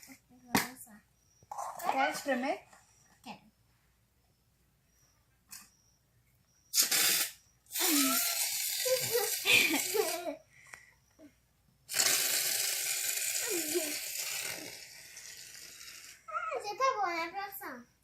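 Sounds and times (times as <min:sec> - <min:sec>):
aerosol can spraying: 0:06.8 - 0:10.1.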